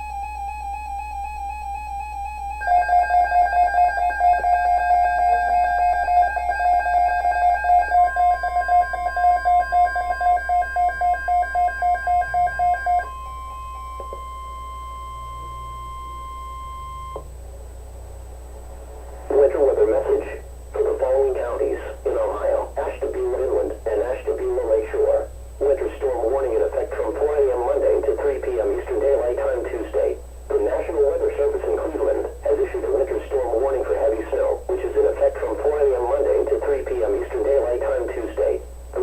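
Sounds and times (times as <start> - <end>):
pulsing alarm beep: 0.0 - 17.2
warbling alarm beep: 0.0 - 17.2
steady warning tone: 0.0 - 17.3, 18.1 - 39.0.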